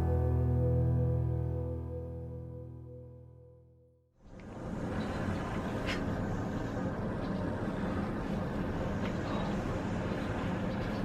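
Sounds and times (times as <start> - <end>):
outdoor background rumble: 4.2 - 11.0.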